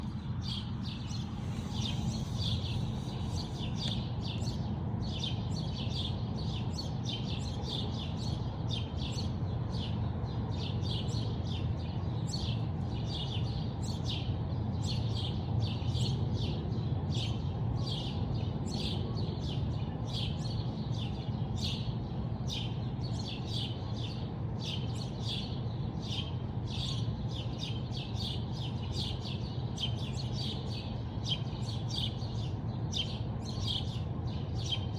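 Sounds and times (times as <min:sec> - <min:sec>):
steady low rumble: 0:00.0 - 0:05.2
small birds chirping: 0:00.0 - 0:34.9.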